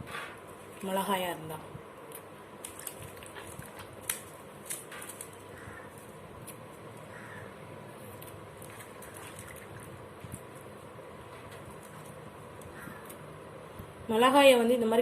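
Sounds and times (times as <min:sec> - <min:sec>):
chilli stems snapping: 0:02.1 - 0:07.2, 0:11.5 - 0:13.9
distant crow cawing: 0:05.4 - 0:06.2, 0:07.0 - 0:07.7, 0:12.6 - 0:13.3.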